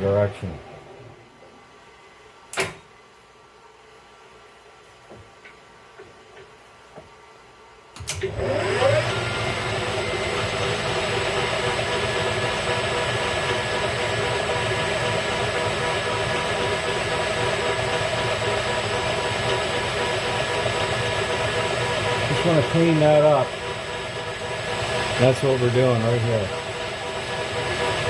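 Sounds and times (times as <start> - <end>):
metal lathe motor running: 8.2 - 28.0.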